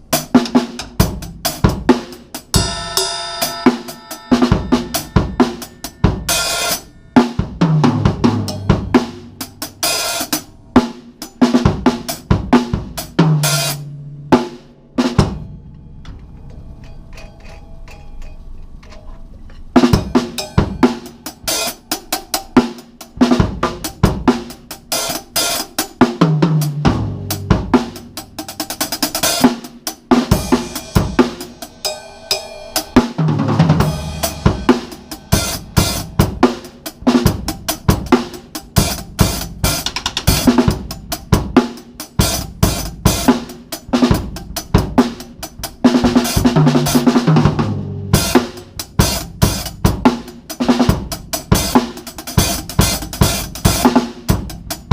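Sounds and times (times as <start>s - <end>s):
drum kit playing: 0.0s - 18.5s, 19.7s - 54.9s
ringing cymbals: 2.1s - 12.2s, 15.1s - 18.6s, 19.8s - 26.0s, 27.3s - 33.2s, 33.8s - 43.9s.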